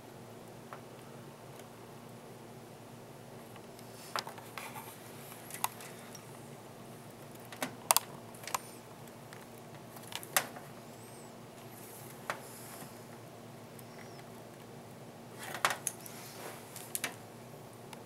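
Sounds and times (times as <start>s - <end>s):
faint steady hum: 0.0s - 18.0s
sharp plastic clicks: 7.4s - 8.7s.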